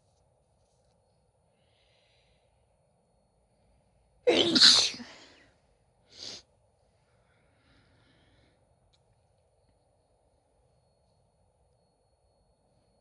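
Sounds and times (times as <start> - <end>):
person sneezing: 4.3 - 5.3.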